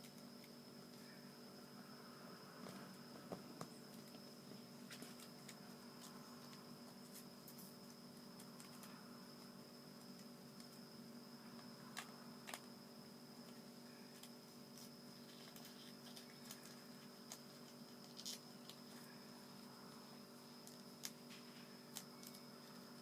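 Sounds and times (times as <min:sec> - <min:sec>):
electrical hum: 0:00.0 - 0:23.0
paper crinkling and folding: 0:14.1 - 0:19.1.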